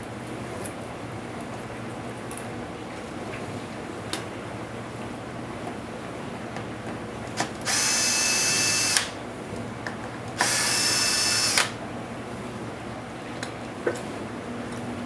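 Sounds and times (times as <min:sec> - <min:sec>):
electric screwdriver whining: 0:07.4 - 0:09.2, 0:10.3 - 0:11.8.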